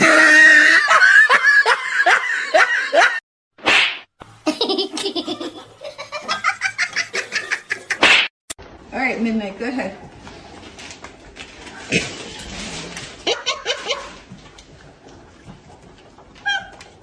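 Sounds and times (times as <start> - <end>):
person laughing hard: 0.0 - 3.2.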